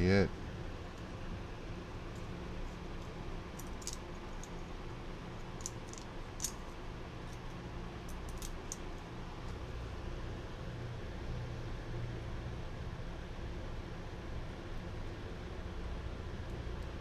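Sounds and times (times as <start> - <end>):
steady low hum: 0.0 - 17.0
small parts clicking and tapping: 3.5 - 4.6, 5.4 - 9.1.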